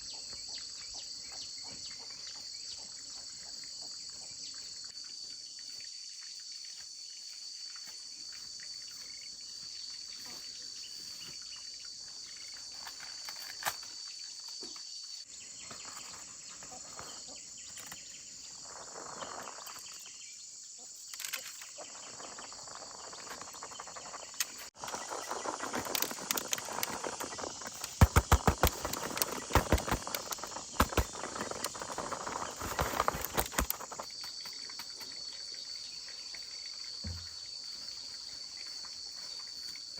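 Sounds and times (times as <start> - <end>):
insects chorus: 0.0 - 39.9
rustling handling noise: 23.2 - 34.1
sharp knocks and clicks: 24.4 - 34.9.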